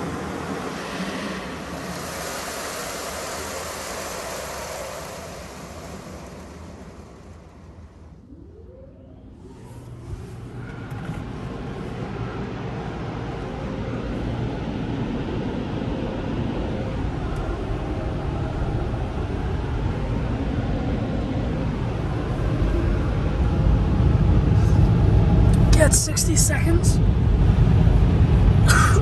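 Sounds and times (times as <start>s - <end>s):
air dryer blowers rushing: 0.0s - 8.2s.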